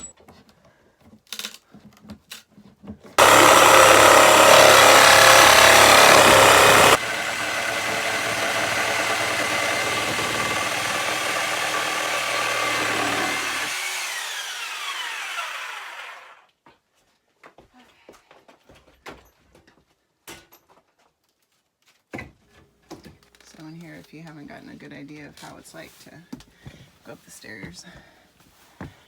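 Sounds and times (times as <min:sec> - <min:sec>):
power tool motor running: 0:03.2 - 0:16.4.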